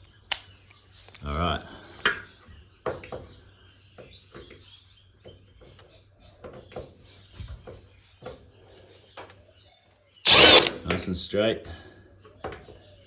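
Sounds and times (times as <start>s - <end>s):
faint squeaks of screwdrivers: 10.3s - 10.8s.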